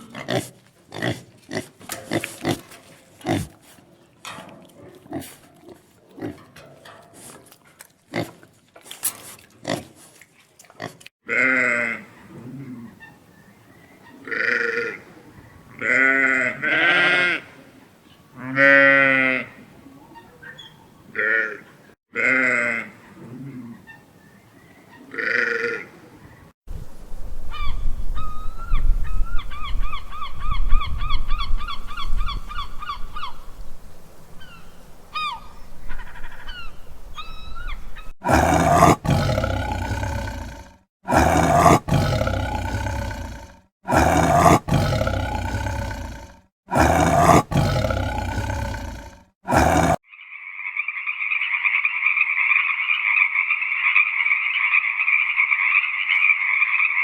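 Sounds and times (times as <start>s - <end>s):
large animal roaring: 38.2s - 50.0s
frogs croaking: 50.0s - 57.0s.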